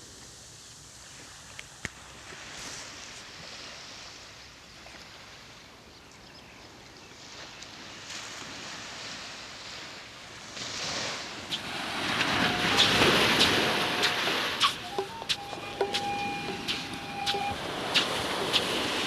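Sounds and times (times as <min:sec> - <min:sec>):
surf washing on sandy beach: 0:00.0 - 0:05.8, 0:07.1 - 0:19.0.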